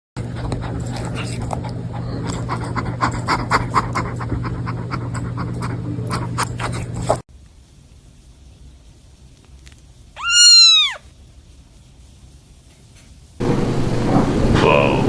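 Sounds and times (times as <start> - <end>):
steady low hum: 0.2 - 9.2.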